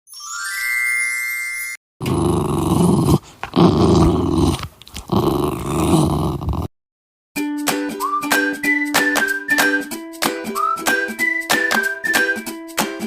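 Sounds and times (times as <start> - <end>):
dog growling: 2.0 - 6.7.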